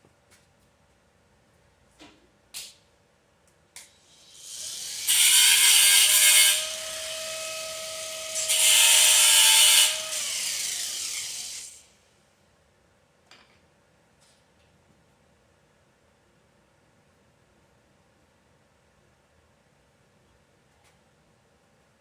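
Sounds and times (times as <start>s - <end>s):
angle grinder grinding metal: 4.4s - 11.8s.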